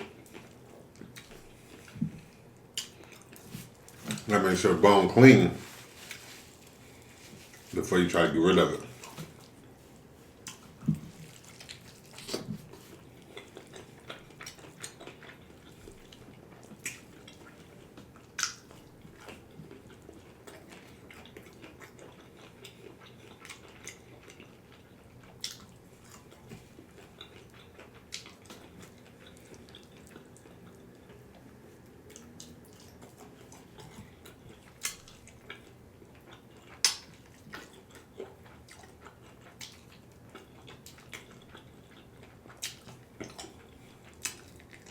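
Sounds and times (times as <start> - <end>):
person chewing meat: 0.0 - 4.5, 8.8 - 44.9
wet mouth clicks and smacks: 18.4 - 18.8, 34.8 - 35.2, 36.7 - 37.7, 42.6 - 43.5.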